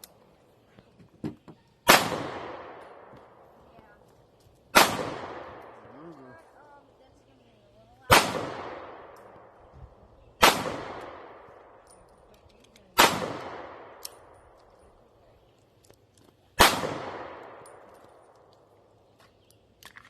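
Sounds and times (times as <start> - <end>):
gunshots with echo: 1.9 - 3.1, 4.7 - 6.0, 8.1 - 9.4, 10.4 - 11.6, 13.0 - 14.0, 16.6 - 17.7.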